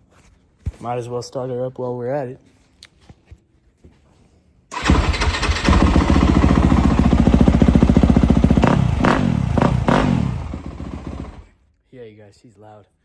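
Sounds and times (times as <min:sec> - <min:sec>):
dirt bike engine revving: 0:04.8 - 0:11.5.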